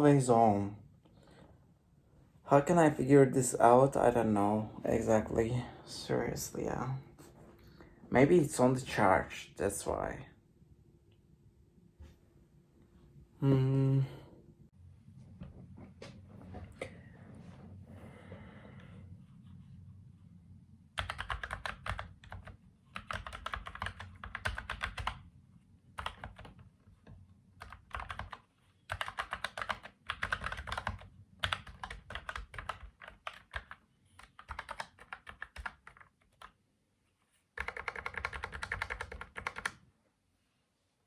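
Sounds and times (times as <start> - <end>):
mechanical keyboard typing: 21.0 - 25.2, 26.0 - 26.7, 27.6 - 36.6, 37.6 - 39.8.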